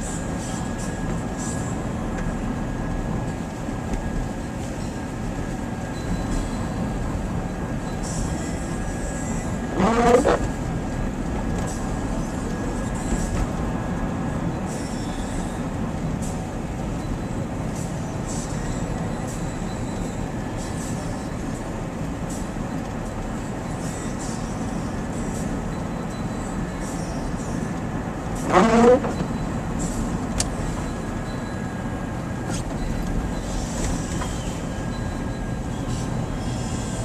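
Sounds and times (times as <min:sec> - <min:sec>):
rising squeal: 0:09.7 - 0:10.6, 0:28.4 - 0:37.0.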